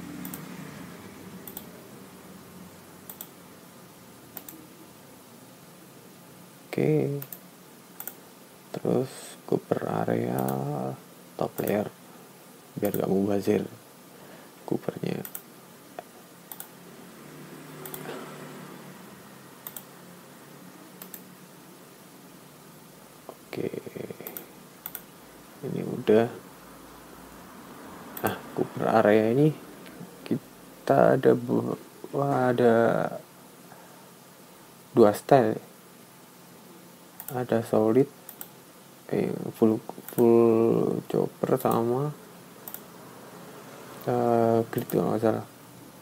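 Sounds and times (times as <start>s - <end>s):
faint low hum: 0.0s - 46.0s
faint room noise: 0.0s - 46.0s
computer clicks: 0.2s - 0.5s, 1.4s - 1.7s, 3.0s - 3.4s, 4.3s - 4.6s, 7.1s - 8.2s, 10.3s - 10.7s, 11.6s - 11.9s, 12.8s - 13.1s, 15.2s - 15.5s, 16.4s - 16.8s, 17.8s - 18.1s, 19.6s - 19.9s, 21.0s - 21.3s, 24.2s - 25.1s, 28.2s - 28.4s, 37.2s - 37.4s, 38.3s - 38.6s, 40.0s - 40.4s, 42.6s - 42.9s, 44.8s - 45.0s.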